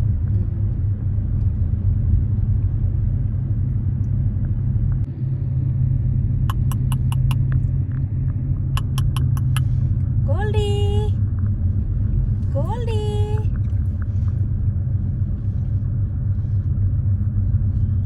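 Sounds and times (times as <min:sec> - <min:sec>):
car road rumble inside cabin: 0:00.0 - 0:18.0
short sharp ticks: 0:06.5 - 0:07.4, 0:08.8 - 0:09.7.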